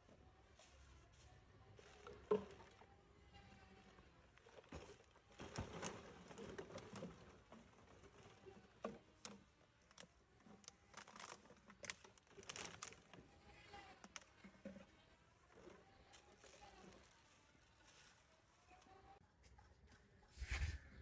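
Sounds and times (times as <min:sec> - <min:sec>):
faint scattered clicks and knocks: 0:03.9 - 0:18.0.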